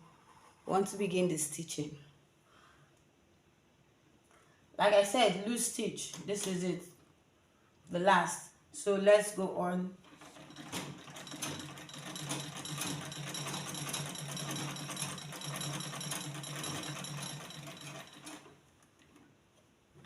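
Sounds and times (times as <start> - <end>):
sewing machine clatter: 10.0 - 19.3.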